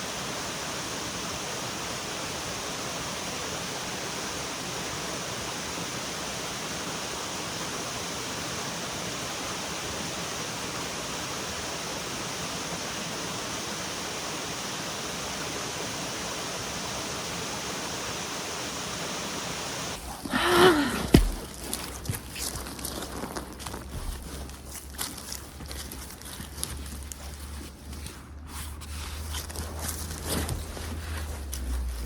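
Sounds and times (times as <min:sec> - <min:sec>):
water rushing: 0:00.0 - 0:20.1.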